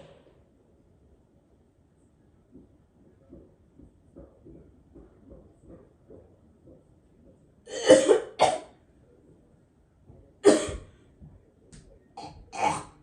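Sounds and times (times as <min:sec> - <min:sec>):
person coughing hard: 0:07.7 - 0:08.7, 0:10.4 - 0:10.9, 0:12.2 - 0:13.0.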